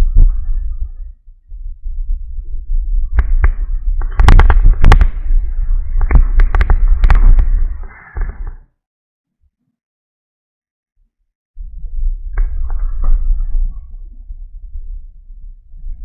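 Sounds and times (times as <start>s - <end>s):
low handling rumble on microphone: 0.0s - 8.6s, 11.6s - 16.0s
sharp plastic clicks and knocks: 3.2s - 5.2s, 6.0s - 8.6s.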